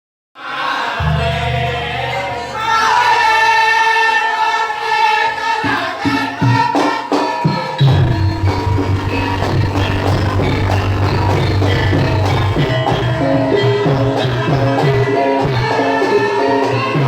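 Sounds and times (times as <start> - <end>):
choir-like sustained chord: 0.9 - 5.2
low drone: 1.0 - 2.9, 7.9 - 13.2
drum strikes: 1.0 - 3.8, 5.6 - 15.8
full band with bass: 7.9 - 17.0.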